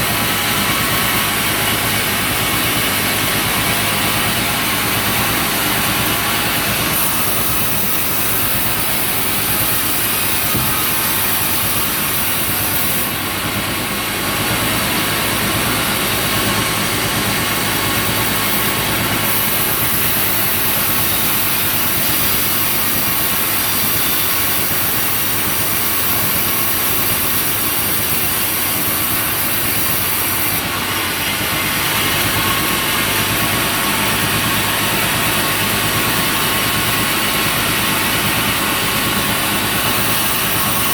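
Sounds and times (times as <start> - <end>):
sawmill engine drone: 0.0 - 40.9
high hiss of saw: 4.8 - 13.3, 17.8 - 30.7, 31.5 - 40.9.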